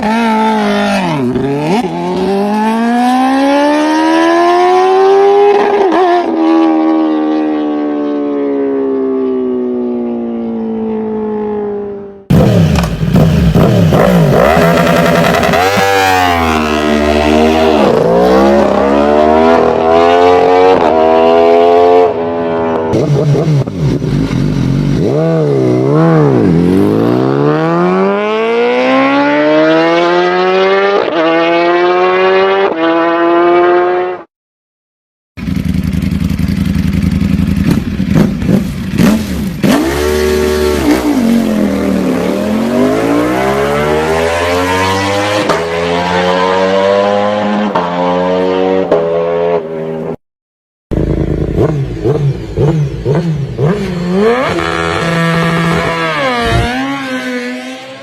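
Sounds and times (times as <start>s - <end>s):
motorcycle engines accelerating: 12.3s - 34.2s, 50.9s - 58.0s.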